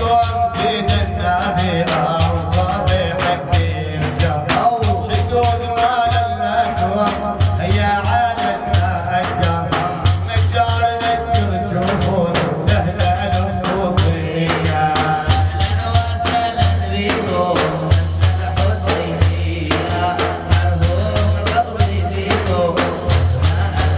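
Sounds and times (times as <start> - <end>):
busy drum beat: 0.0 - 23.9
person singing long notes: 0.0 - 23.9
pulsing bass: 8.8 - 23.9.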